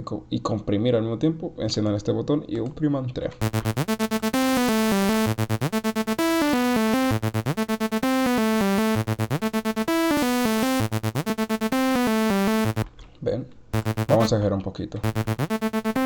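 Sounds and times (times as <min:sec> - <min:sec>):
synthesizer melody loop: 0:03.4 - 0:12.8, 0:13.8 - 0:14.3, 0:15.0 - 0:16.0.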